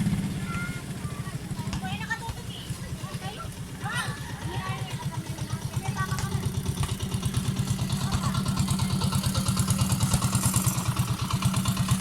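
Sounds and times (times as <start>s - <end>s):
small engine chugging: 0.0s - 12.0s.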